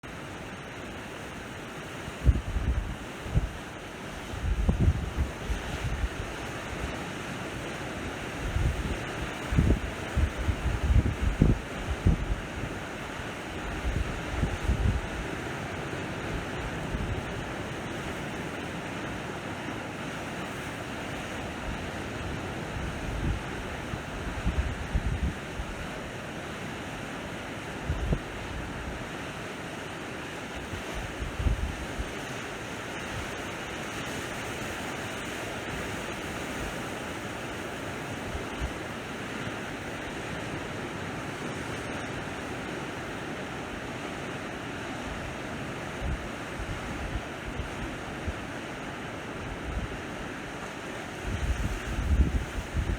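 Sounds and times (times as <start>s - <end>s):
sea waves washing onto shore: 0.0s - 52.9s
wind buffeting microphone: 2.2s - 3.6s, 4.3s - 6.9s, 8.4s - 12.9s, 13.6s - 17.7s, 21.5s - 25.9s, 30.7s - 32.1s, 51.2s - 52.9s.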